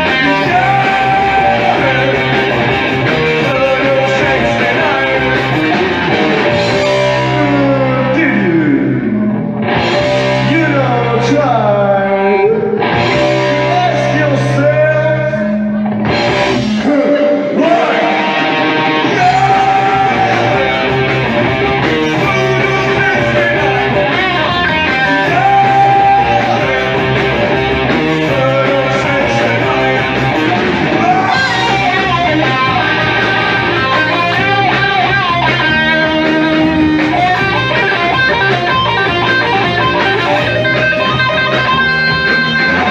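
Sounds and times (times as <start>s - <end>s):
person singing: 0.0s - 6.0s, 16.6s - 34.3s
electric guitar: 0.0s - 42.9s
rock band playing live: 0.0s - 42.9s.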